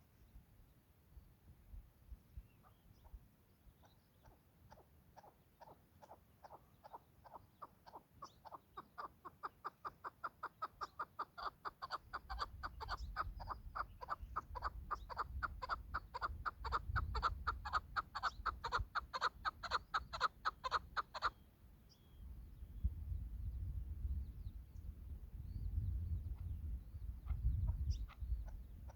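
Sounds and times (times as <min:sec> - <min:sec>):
partridge repeated chuk calls: 0:03.8 - 0:22.0.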